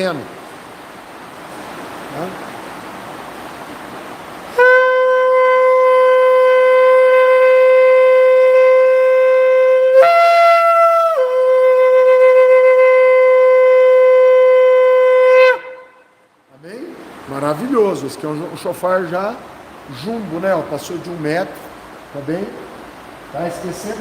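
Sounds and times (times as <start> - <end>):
shofar blown: 4.5 - 16.3.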